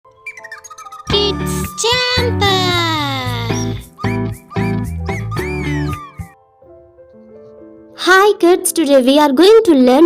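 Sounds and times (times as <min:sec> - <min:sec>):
children's music with bass: 0:01.0 - 0:06.4.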